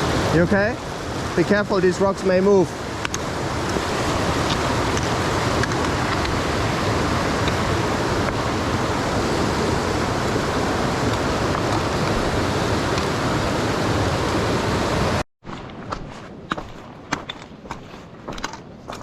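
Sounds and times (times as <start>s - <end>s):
fast-flowing river: 0.0s - 15.2s
footsteps on stones: 3.7s - 6.4s, 15.5s - 19.0s.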